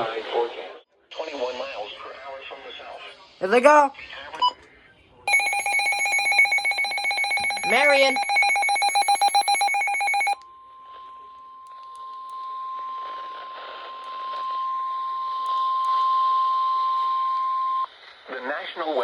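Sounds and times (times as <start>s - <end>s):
fast electronic beeping: 5.3s - 10.4s
weather radio alarm tone: 5.3s - 10.4s.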